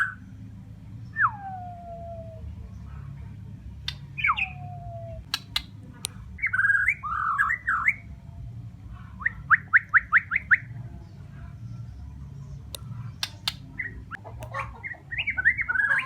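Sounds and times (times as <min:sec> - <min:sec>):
bird singing: 0:00.0 - 0:16.0
steady low hum: 0:00.0 - 0:16.0.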